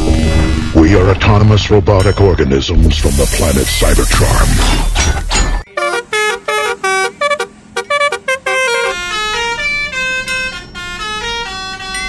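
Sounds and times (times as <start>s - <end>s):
multi-tone bus horn tune: 5.7s - 12.0s.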